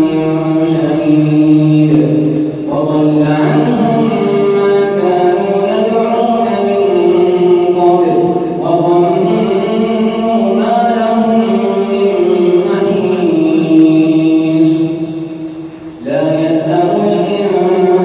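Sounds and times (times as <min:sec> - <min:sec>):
man chanting recitation: 0:00.0 - 0:18.0.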